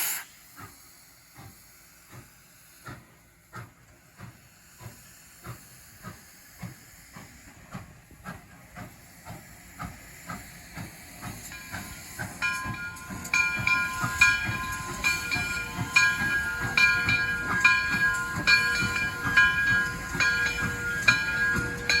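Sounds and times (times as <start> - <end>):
steam locomotive exhaust beats: 0.0 - 22.0
locomotive bell ringing: 11.5 - 22.0.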